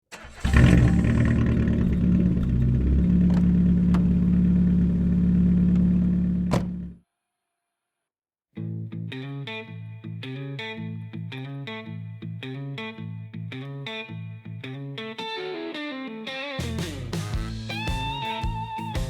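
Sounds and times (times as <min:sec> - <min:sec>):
car engine running: 0:00.2 - 0:07.0.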